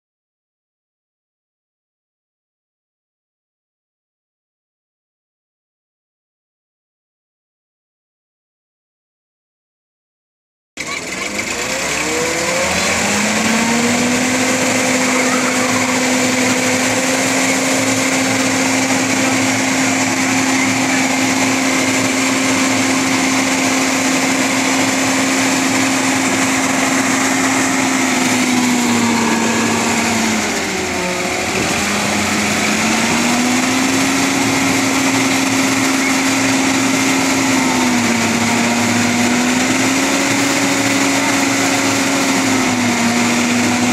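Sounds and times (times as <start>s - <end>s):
vacuum blower humming: 10.9s - 43.9s.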